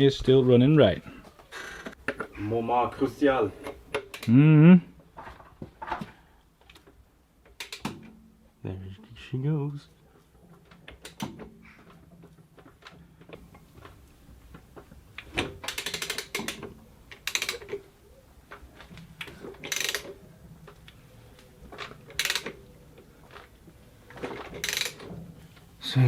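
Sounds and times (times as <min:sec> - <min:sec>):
ratchet wrench clicking: 0:15.6 - 0:17.8, 0:19.6 - 0:20.2, 0:22.1 - 0:22.6, 0:24.6 - 0:25.1.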